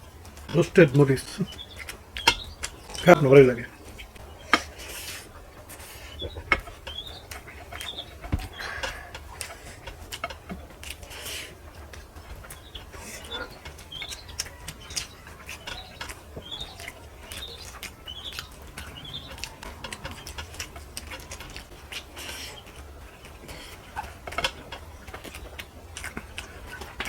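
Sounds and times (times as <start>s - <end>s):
chewing and lip smacks: 0.0s - 27.0s.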